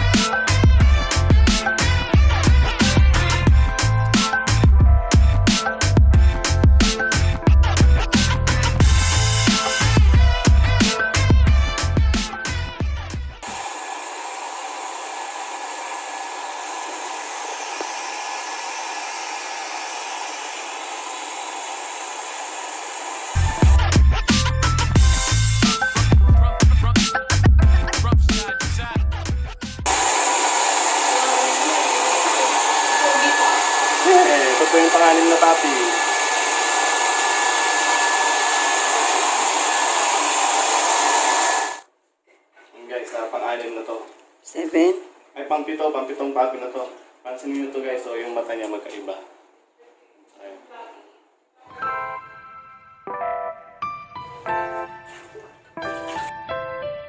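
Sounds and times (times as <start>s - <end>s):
hair dryer blowing: 0.0s - 3.5s, 8.6s - 10.5s, 13.4s - 24.0s, 29.9s - 41.9s.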